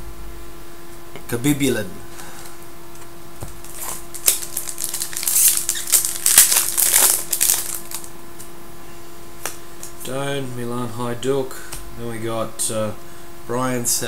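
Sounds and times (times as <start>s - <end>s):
foil wrapper crinkling: 3.5s - 8.5s.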